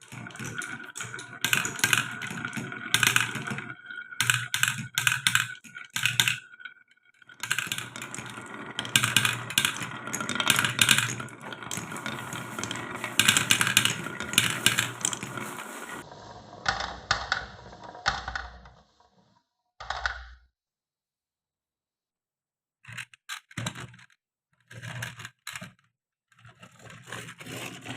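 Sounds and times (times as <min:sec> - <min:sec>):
marbles rattling down wooden track: 0:00.0 - 0:18.8, 0:27.1 - 0:27.9.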